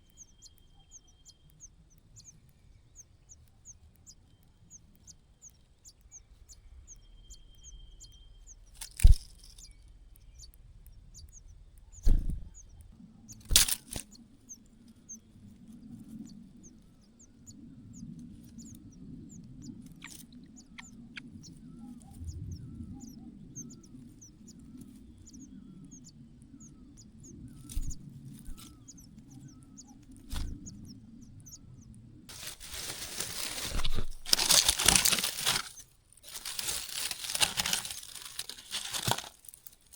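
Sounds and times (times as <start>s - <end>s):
rustling of handling: 8.8s - 9.6s, 32.3s - 39.9s
nestlings cheeping: 16.2s - 31.6s, 32.3s - 39.9s.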